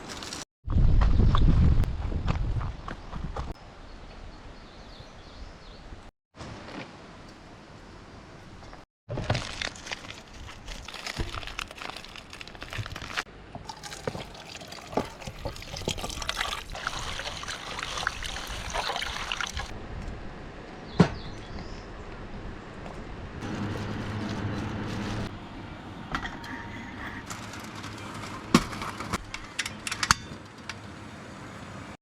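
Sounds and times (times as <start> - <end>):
water pouring and splashing: 9.4 - 19.8.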